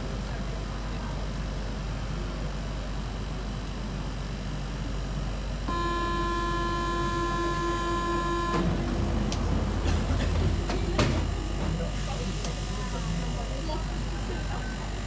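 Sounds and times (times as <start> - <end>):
train low rumble: 0.0 - 15.0
constant-pitch buzzing tone: 5.6 - 8.6.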